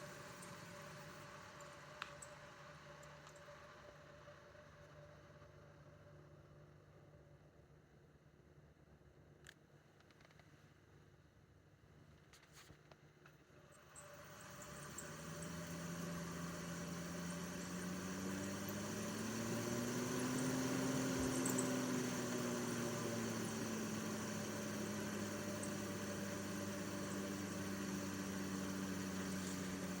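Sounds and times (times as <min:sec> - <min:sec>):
air purifier fan humming: 0:13.7 - 0:30.0
droning tone rising and falling: 0:14.5 - 0:30.0.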